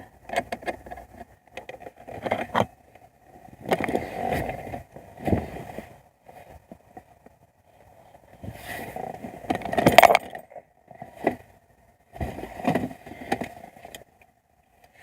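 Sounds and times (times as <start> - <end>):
metal tools clinking and rattling: 9.6 - 10.5.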